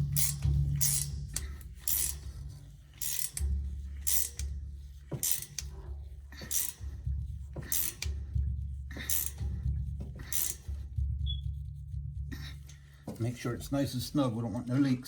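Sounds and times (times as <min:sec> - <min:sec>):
ratchet wrench ratcheting: 0:00.0 - 0:05.7, 0:06.3 - 0:07.0, 0:07.6 - 0:08.2, 0:09.0 - 0:09.5, 0:10.2 - 0:10.8.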